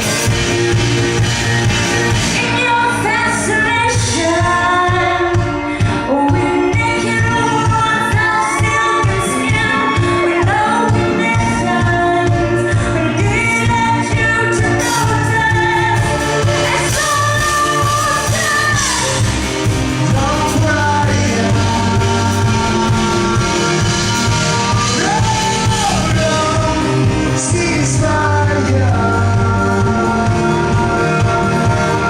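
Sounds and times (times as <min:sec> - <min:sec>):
live band playing: 0:00.0 - 0:32.0.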